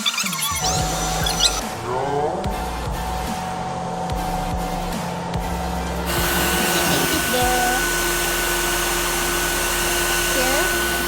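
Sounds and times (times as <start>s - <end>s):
cordless vacuum cleaner motor: 6.1s - 11.0s.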